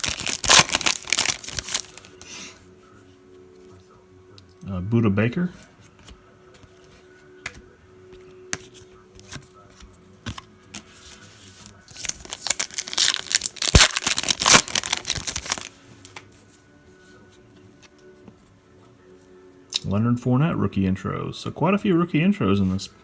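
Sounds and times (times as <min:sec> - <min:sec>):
foil wrapper tearing and crinkling: 0:00.0 - 0:02.2, 0:11.9 - 0:15.7.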